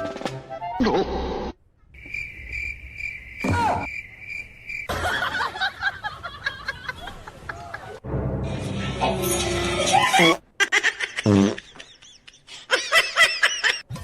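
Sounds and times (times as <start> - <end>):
cricket chirping: 2.0 - 5.5.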